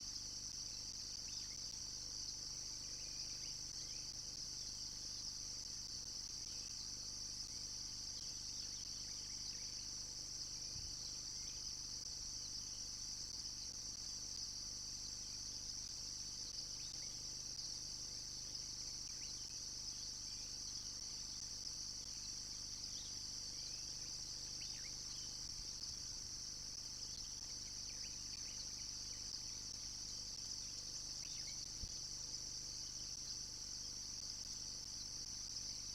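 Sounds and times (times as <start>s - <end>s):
high-pitched insect chorus: 0.0s - 35.9s
faint bird chirps: 16.5s - 26.0s, 27.0s - 32.1s.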